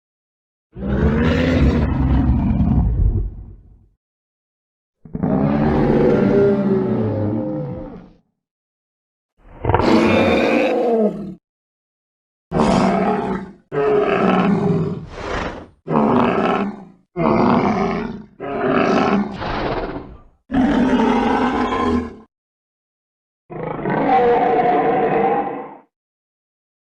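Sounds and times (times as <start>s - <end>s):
dinosaur roars and growls: 0.7s - 3.9s, 5.0s - 8.3s, 9.4s - 11.4s, 12.5s - 22.3s, 23.5s - 25.9s.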